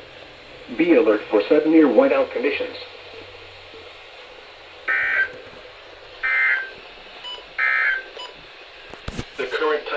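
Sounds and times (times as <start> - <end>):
digital data tone bursts: 4.9 - 5.4.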